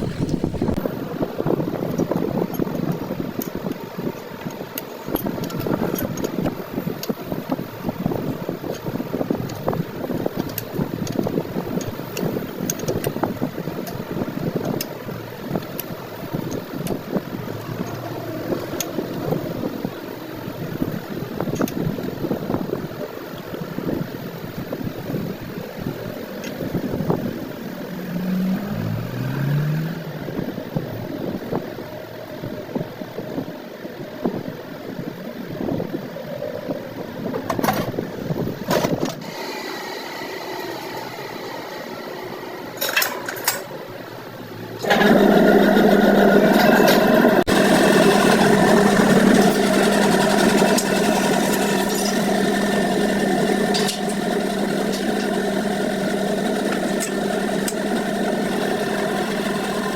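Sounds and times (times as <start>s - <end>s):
motor humming: 0.0s - 0.8s, 47.2s - 59.9s
workshop clatter and clicks: 42.8s - 43.8s, 44.8s - 59.9s.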